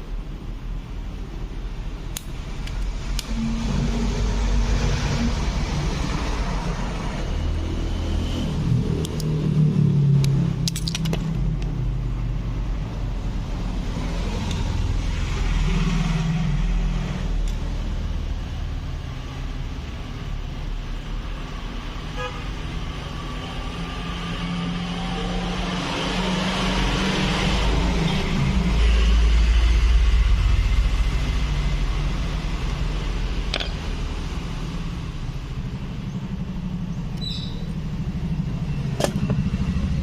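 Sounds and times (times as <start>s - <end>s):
road traffic rumbling: 0.0s - 40.0s
car horn tooting: 22.2s - 22.5s.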